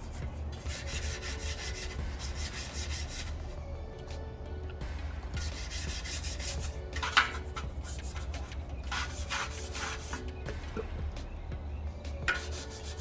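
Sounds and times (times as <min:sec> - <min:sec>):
scrubbing rust off metal frame: 0:00.0 - 0:03.6, 0:05.3 - 0:11.2, 0:12.2 - 0:13.0.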